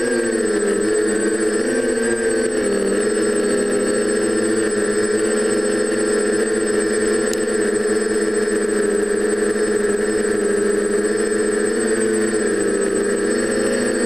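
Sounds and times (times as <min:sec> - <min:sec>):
quadcopter motors buzzing: 0:00.0 - 0:14.0.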